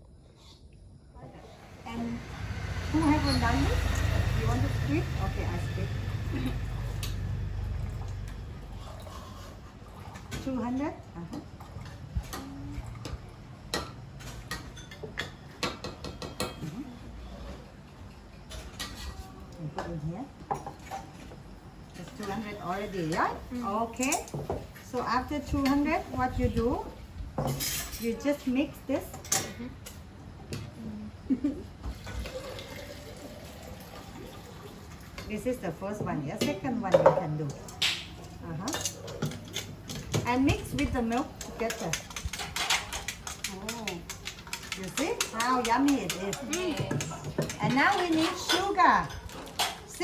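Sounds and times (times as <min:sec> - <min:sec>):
tea pouring trickle: 0:32.0 - 0:35.2
clinks of cups and utensils: 0:36.4 - 0:50.0.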